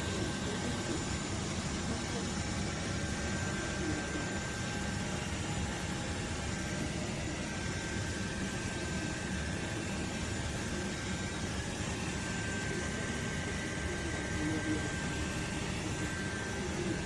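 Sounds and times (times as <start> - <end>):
robot vacuum fan whirring: 0.0 - 17.0
thin high whine: 0.0 - 17.0.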